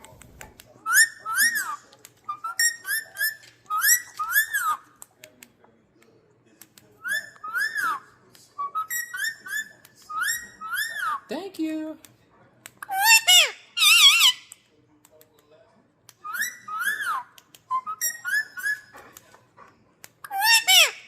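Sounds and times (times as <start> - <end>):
parakeet whistling: 16.2 - 18.9.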